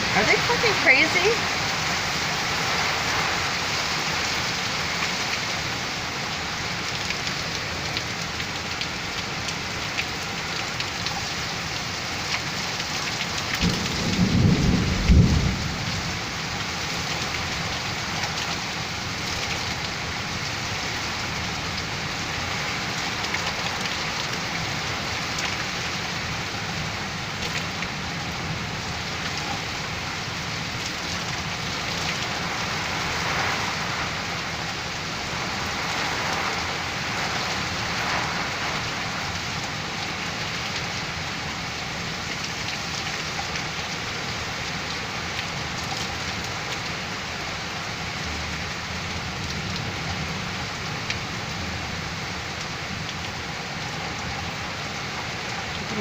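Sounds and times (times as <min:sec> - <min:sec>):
heavy rain falling: 0:00.0 - 0:56.0
low rumble of thunder: 0:13.6 - 0:17.9.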